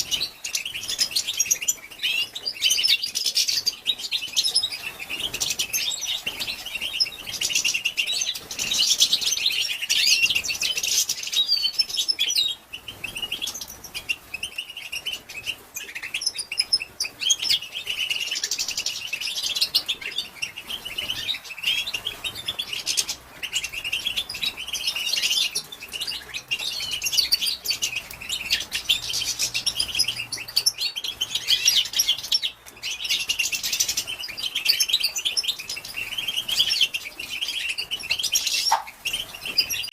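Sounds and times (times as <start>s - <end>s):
goldfinch twittering chatter: 0.0s - 39.9s.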